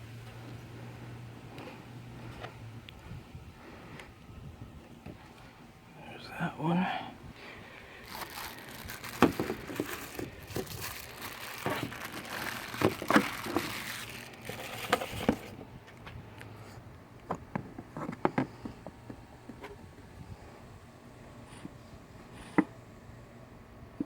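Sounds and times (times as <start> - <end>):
plastic crinkling and rustling: 7.6 - 16.2.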